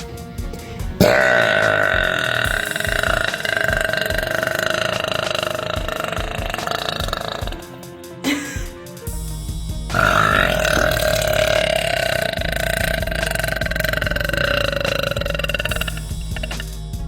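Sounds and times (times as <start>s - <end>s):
girl burping: 1.0s - 7.5s.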